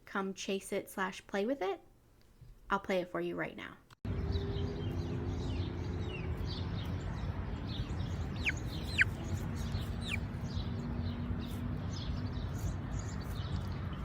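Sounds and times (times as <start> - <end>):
chicks cheeping: 4.1 - 14.0.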